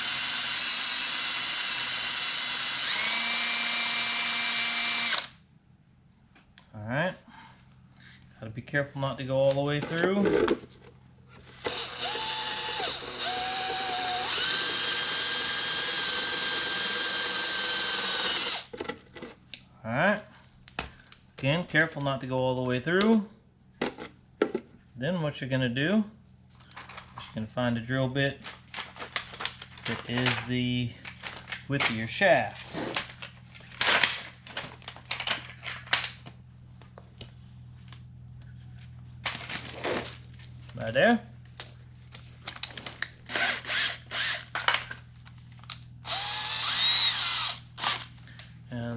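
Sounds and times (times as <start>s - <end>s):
power drill boring into wood: 0.0s - 5.4s, 11.6s - 18.7s, 43.3s - 44.5s, 46.0s - 48.1s.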